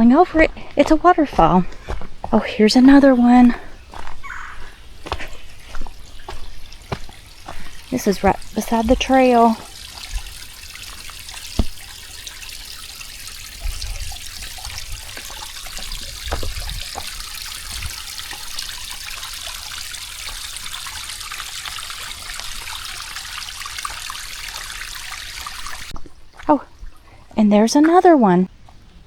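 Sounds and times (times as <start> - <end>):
dull low knocks: 0.0 - 18.5
waterfall splashing: 0.4 - 25.9.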